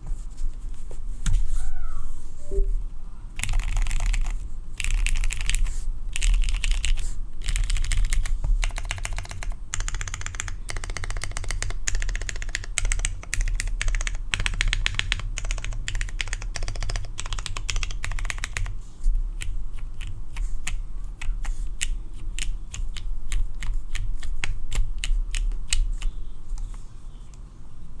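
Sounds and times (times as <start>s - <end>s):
mechanical keyboard typing: 3.4s - 18.7s.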